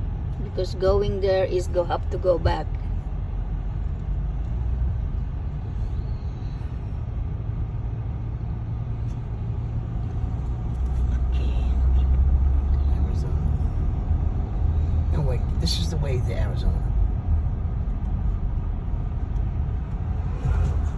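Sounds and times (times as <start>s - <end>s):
car driving rumble inside cabin: 0.0s - 20.9s.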